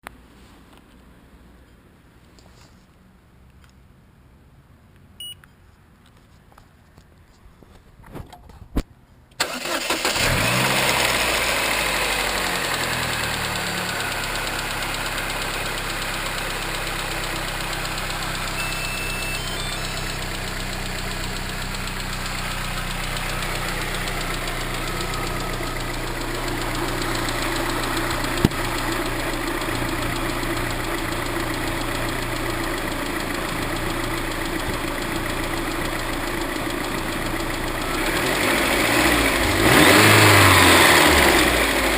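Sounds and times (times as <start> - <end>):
car engine starting and idling: 9.3 - 41.9
engine knocking rattle: 20.3 - 37.9.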